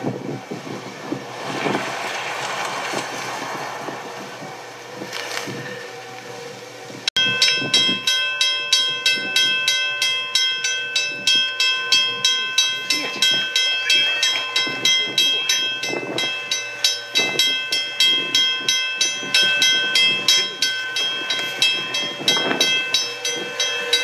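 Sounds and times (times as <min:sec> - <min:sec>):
train rushing rumble: 0:00.0 - 0:08.1, 0:10.9 - 0:24.0
sharp ringing beat: 0:07.2 - 0:24.0.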